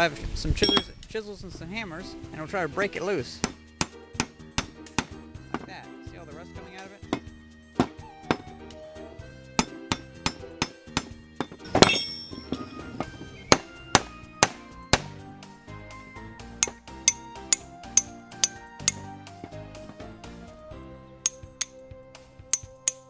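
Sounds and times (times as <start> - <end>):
background music: 0.0 - 23.0
hammer tapping chisel on metal: 0.6 - 1.0, 3.4 - 5.7, 9.6 - 15.2, 16.6 - 20.0, 21.3 - 21.8, 22.5 - 23.0.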